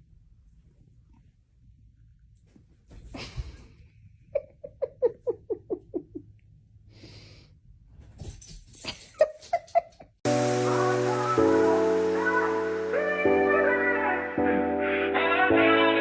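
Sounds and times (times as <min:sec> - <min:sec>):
music: 0:10.3 - 0:16.0.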